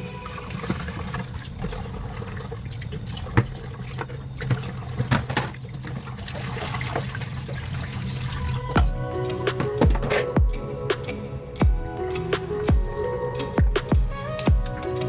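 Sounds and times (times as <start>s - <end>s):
water trickling and splashing: 0.0s - 10.5s.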